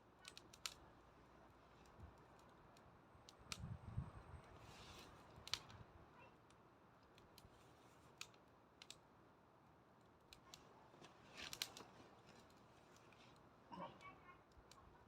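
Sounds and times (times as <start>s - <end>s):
bonfire crackling and popping: 0.1s - 0.9s, 4.4s - 5.9s, 6.5s - 9.1s, 10.0s - 13.4s.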